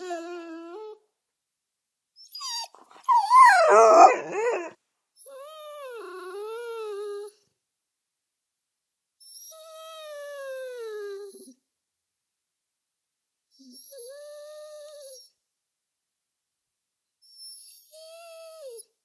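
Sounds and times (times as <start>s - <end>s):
dog whimpering: 0.0s - 1.0s, 2.2s - 7.4s, 9.2s - 11.6s, 13.6s - 15.3s, 17.2s - 18.9s.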